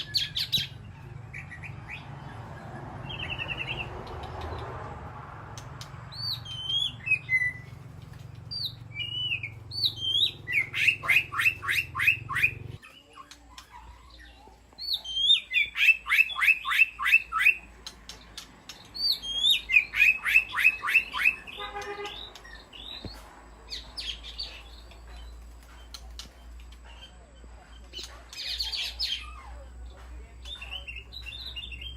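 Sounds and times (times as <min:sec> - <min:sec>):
bird singing whistled phrases: 0:06.2 - 0:07.7, 0:08.5 - 0:13.1, 0:19.0 - 0:21.6.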